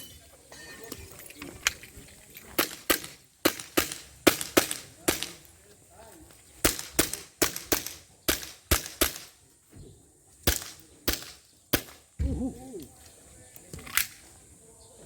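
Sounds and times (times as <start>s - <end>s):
airsoft pistol shots: 2.6s - 5.4s, 6.6s - 9.3s, 10.4s - 12.0s.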